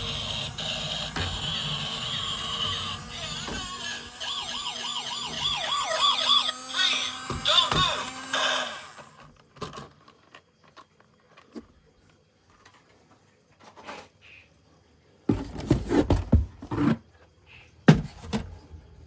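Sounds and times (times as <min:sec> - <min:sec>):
plastic toys clattering: 0:09.2 - 0:11.8.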